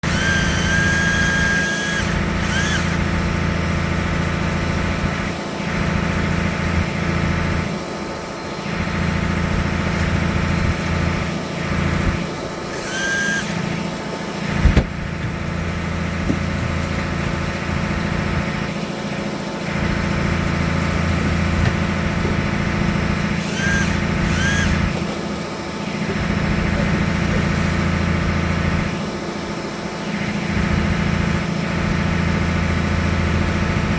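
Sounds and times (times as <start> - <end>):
small motor whining: 0.0 - 7.7, 8.6 - 17.9, 19.6 - 29.1
boat engine humming: 0.0 - 33.9.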